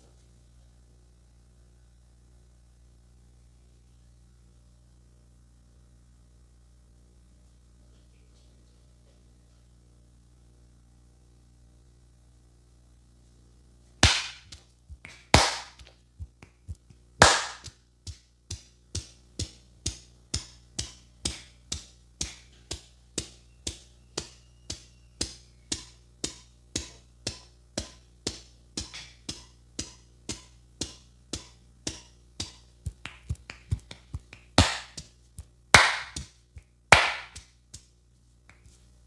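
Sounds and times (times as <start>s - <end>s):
hands slapping in massage: 14.0s - 37.9s.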